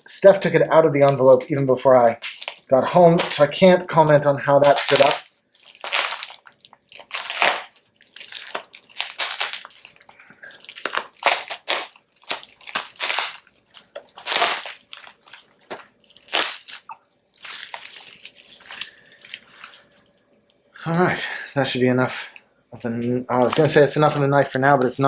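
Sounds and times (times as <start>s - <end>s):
wrapping rustling: 0.9s - 3.7s, 4.6s - 20.7s, 22.8s - 24.9s
knife cutting packaging: 4.6s - 6.4s.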